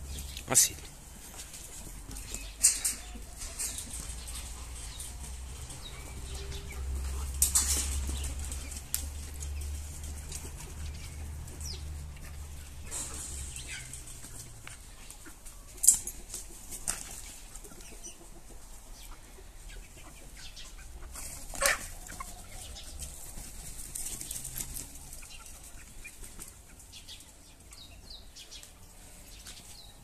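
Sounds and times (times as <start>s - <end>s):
chickens rustling: 0.0s - 30.0s
chicken high calls: 10.6s - 23.3s.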